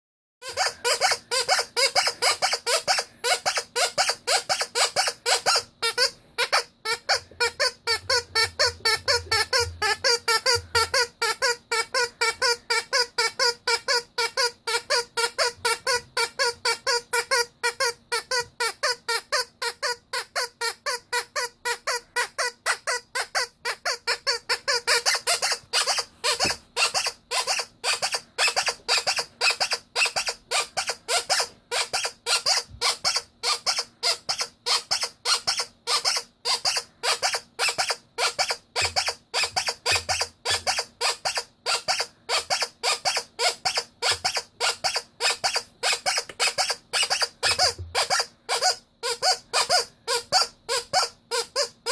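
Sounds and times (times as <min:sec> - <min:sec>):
rubber squeaky toy squeaking: 0:00.4 - 0:51.9.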